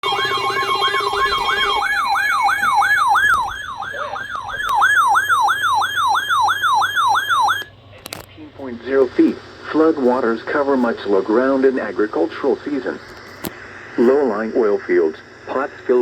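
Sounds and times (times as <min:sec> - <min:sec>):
steady alarm tone: 0:00.0 - 0:07.7
whooping siren tone: 0:00.0 - 0:07.7.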